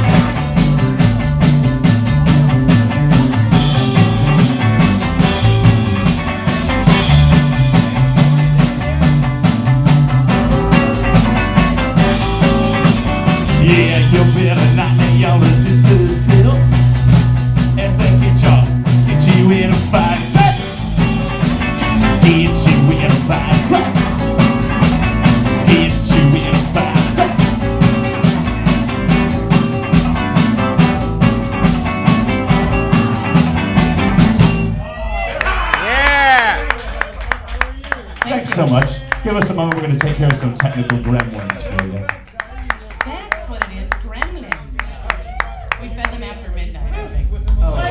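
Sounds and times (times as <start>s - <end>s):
drum kit beat: 0.0s - 34.8s, 38.1s - 46.2s
electric guitar: 0.0s - 34.8s
bass line: 0.0s - 37.2s, 38.1s - 42.2s.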